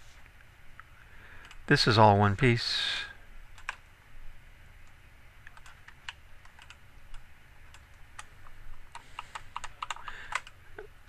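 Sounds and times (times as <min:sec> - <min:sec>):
computer keyboard key clicks: 0:03.6 - 0:03.8, 0:05.4 - 0:08.3, 0:08.9 - 0:10.6.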